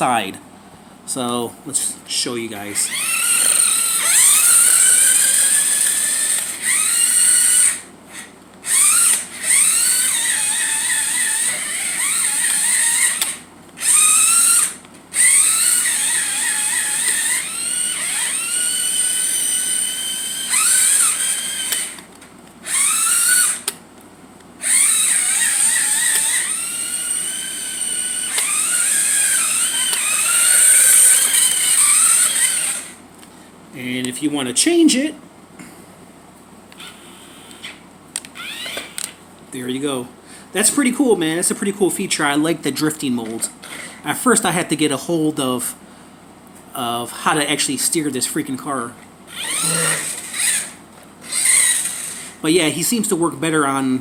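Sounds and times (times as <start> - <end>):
toy car electric motor whining: 2.7 - 23.8, 24.6 - 33.0, 36.8 - 39.1, 49.3 - 52.4.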